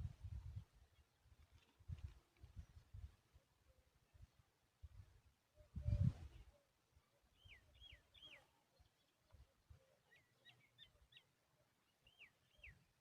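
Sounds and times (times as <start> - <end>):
faint whistled bird calls: 7.3 - 9.1, 9.7 - 11.3, 12.0 - 12.9.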